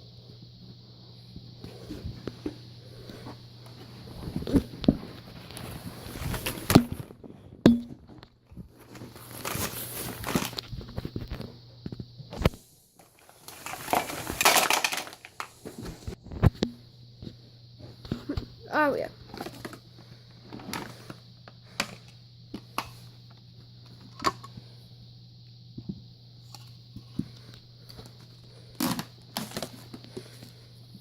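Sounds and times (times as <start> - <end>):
crinkling rustling: 3.6 - 7.6, 8.3 - 11.4, 13.0 - 16.4.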